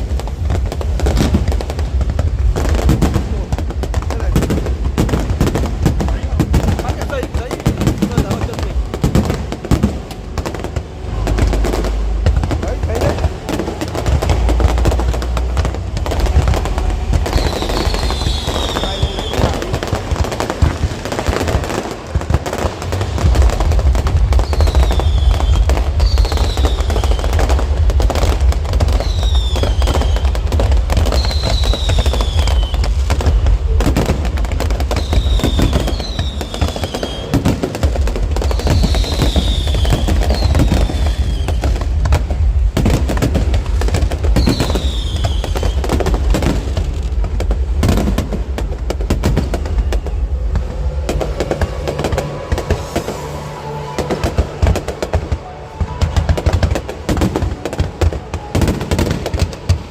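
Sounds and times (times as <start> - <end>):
fireworks bangs and crackling: 0.0 - 59.9
falling firework whistles: 14.0 - 47.2, 49.2 - 59.9.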